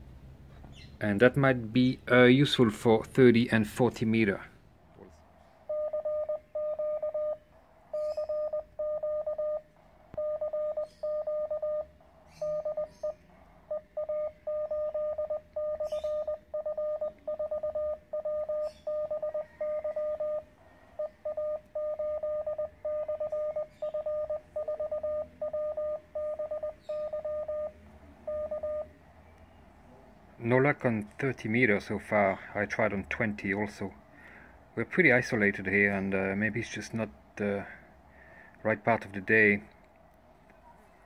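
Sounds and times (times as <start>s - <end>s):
morse code beeps: 5.6s - 29.0s.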